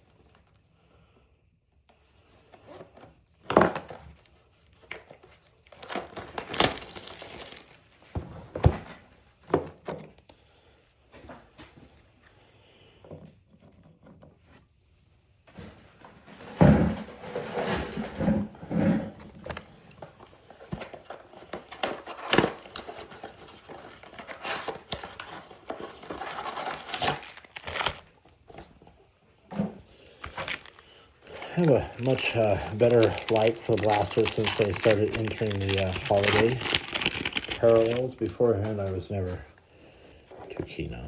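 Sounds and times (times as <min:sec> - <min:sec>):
cardboard box and packs rustling: 0:02.5 - 0:10.2, 0:19.1 - 0:41.0.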